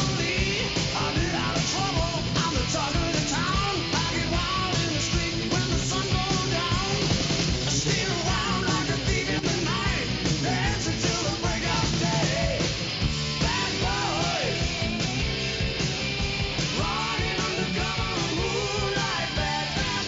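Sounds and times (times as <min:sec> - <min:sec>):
rock music with vocals: 0:00.0 - 0:20.0.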